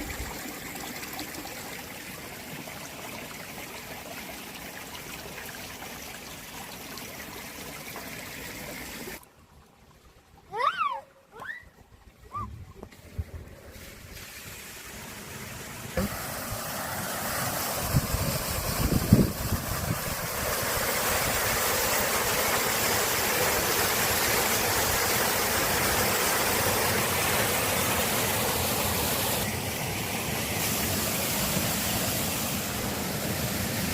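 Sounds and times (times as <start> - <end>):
waterfall rushing: 14.5 - 33.9.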